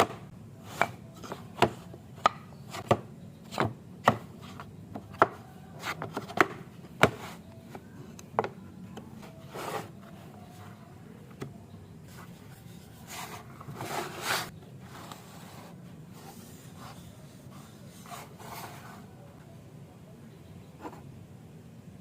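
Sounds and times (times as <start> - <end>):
faint low hum: 0.0 - 22.0
rubbing and scraping on wood: 9.2 - 10.8, 12.1 - 19.1.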